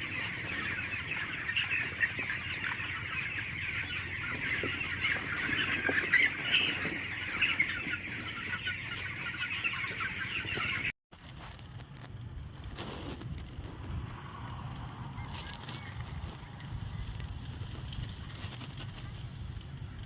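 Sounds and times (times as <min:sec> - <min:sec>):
chickens clucking: 0:00.0 - 0:10.9.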